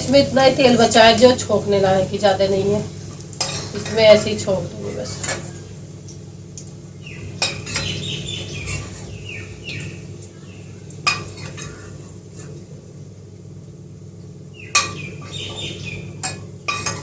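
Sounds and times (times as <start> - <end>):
steady low hum: 0.0 - 17.0
metal utensils clinking on pan: 2.3 - 5.7, 7.4 - 8.0, 10.9 - 11.8, 14.2 - 17.0
falling bird chirps: 6.9 - 11.9, 14.4 - 16.2.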